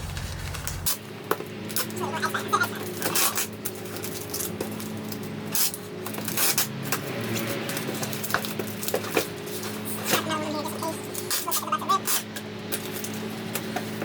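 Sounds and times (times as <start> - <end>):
packing tape tearing off roll: 0.0 - 1.0, 3.0 - 10.2.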